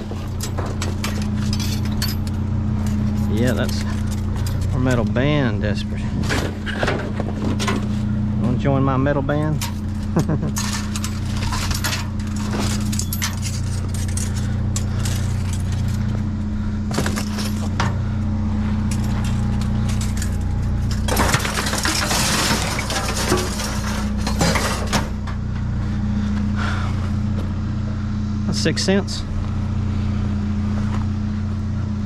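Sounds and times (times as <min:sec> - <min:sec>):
scrap metal clinking and rattling: 0:00.0 - 0:08.1, 0:09.4 - 0:25.6
low engine hum: 0:00.0 - 0:32.0
scraping and rustling: 0:18.9 - 0:25.2.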